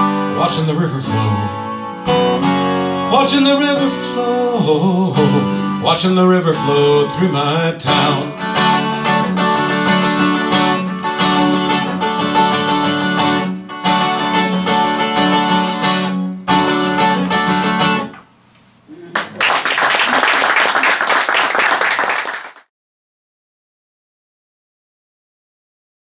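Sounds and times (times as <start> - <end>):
acoustic guitar strumming: 0.0 - 18.2
audience applauding: 19.0 - 22.7.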